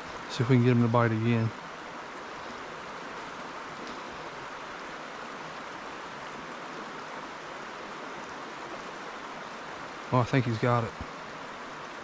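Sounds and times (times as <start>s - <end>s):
stream flowing over rocks: 0.0s - 12.0s.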